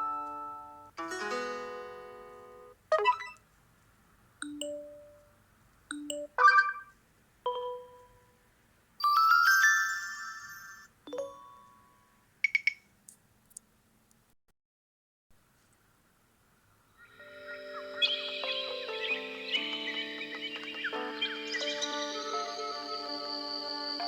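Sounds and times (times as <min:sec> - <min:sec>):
phone notification chimes: 0:05.9 - 0:06.9, 0:07.5 - 0:08.2, 0:09.0 - 0:12.0.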